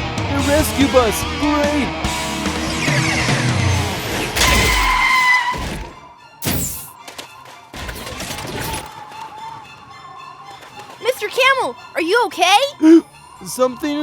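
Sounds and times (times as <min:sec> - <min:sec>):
cartoon music: 0:09.1 - 0:14.0.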